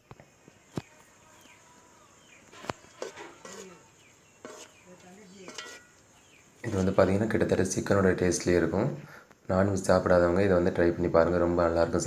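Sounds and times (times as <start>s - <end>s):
small chirping calls: 0.0s - 7.7s.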